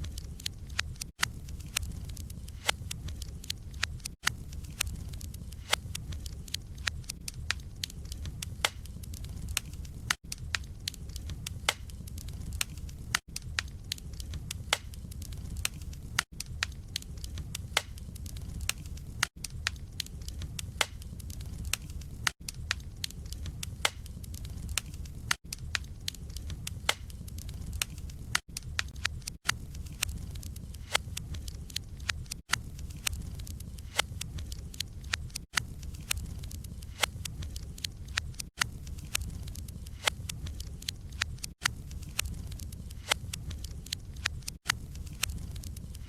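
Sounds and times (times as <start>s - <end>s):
wood fire crackling and popping: 0.0s - 46.0s.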